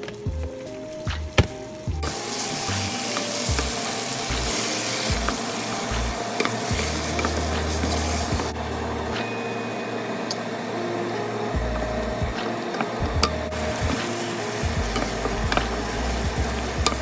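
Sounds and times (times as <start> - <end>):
background music: 0.0 - 17.0
food sizzling in a pan: 2.0 - 11.6, 12.4 - 17.0.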